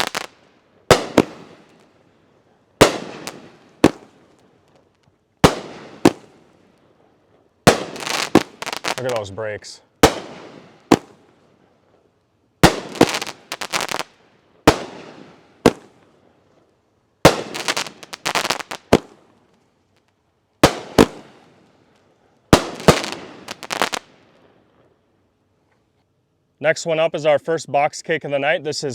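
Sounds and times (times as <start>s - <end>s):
firework bangs: 0.0s - 1.9s, 2.8s - 4.4s, 5.4s - 6.5s, 7.6s - 9.3s, 10.0s - 11.4s, 12.6s - 16.1s, 17.2s - 19.3s, 20.6s - 21.5s, 22.5s - 24.2s.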